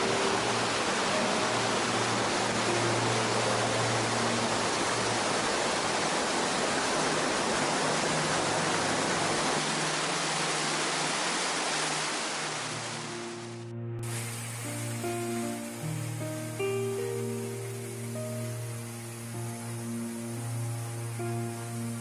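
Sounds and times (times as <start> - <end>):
faint low music tones: 0.0 - 6.3, 13.1 - 22.0
waterfall rushing: 0.0 - 22.0.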